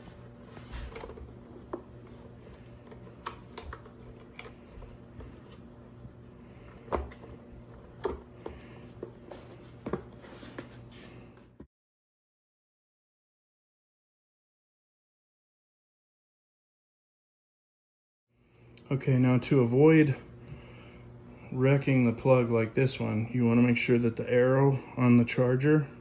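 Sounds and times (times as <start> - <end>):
steady low hum: 0.0 - 11.6.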